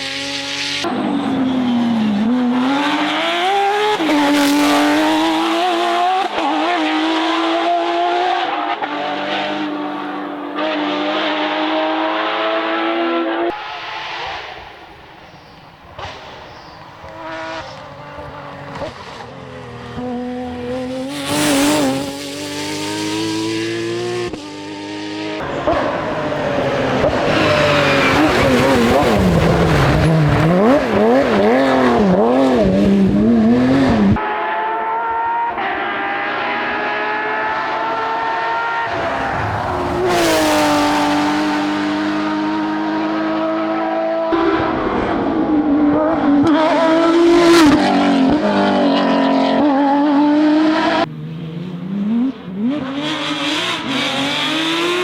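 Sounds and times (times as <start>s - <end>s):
rally car engines revving: 0.0s - 55.0s
tyre squeal: 27.2s - 30.0s.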